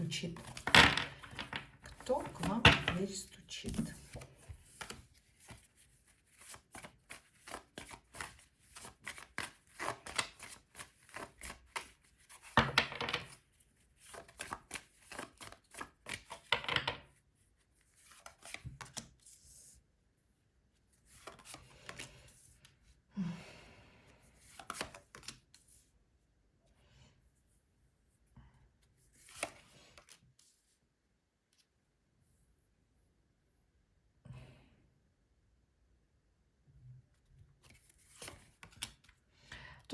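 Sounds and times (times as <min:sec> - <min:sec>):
cards being shuffled: 0:00.3 - 0:13.4, 0:14.0 - 0:17.1, 0:17.9 - 0:19.4, 0:24.4 - 0:25.7, 0:29.1 - 0:30.2, 0:37.6 - 0:39.1.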